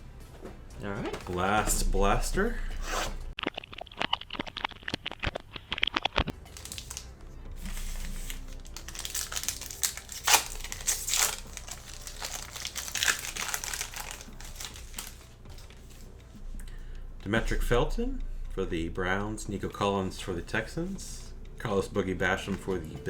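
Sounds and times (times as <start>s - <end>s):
plastic wrapping crinkling and tearing: 3.8s - 15.9s.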